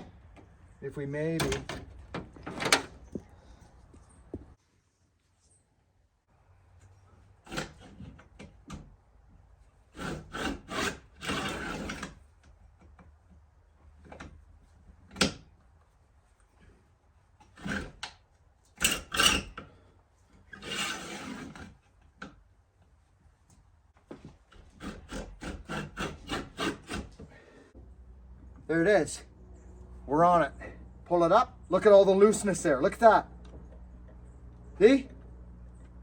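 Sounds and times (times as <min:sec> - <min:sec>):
file scraping chainsaw chain: 0:09.9 - 0:12.2, 0:17.4 - 0:18.1, 0:18.8 - 0:21.8, 0:24.5 - 0:27.5.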